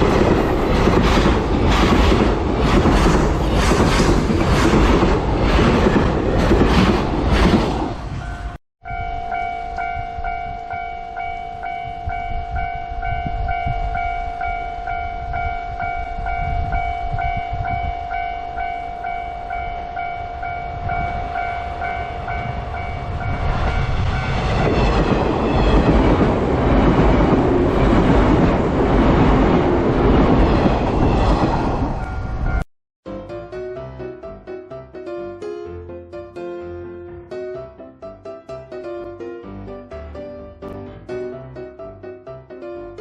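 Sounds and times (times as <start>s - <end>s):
level crossing warning alarm: 8.2s - 24.4s.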